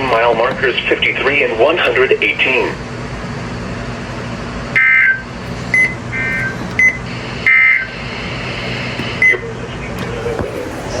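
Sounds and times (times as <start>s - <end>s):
radio hiss and hum: 0.0s - 3.0s, 4.8s - 11.0s.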